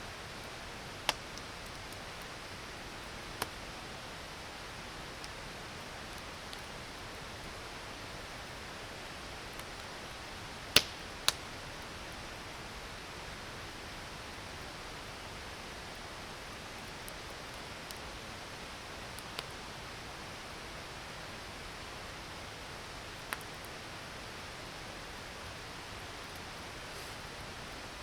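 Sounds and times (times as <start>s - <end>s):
fire crackling: 0.2s - 20.5s, 25.5s - 28.0s
burning wood popping: 9.5s - 11.5s.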